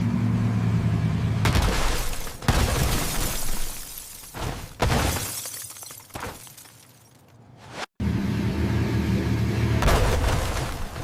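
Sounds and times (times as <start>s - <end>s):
low engine drone: 8.0s - 10.2s.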